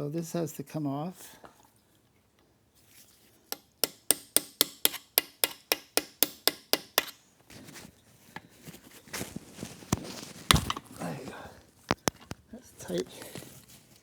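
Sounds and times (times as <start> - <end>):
sharp metallic clicks of hand tool: 3.5 - 7.2
soft handling noise: 7.4 - 14.0.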